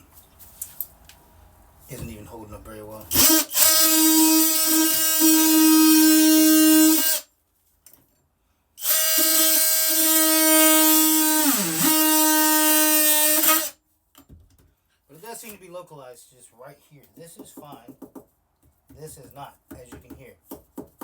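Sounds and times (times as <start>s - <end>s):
oscillating multi-tool buzzing: 3.1s - 7.3s, 8.8s - 13.8s.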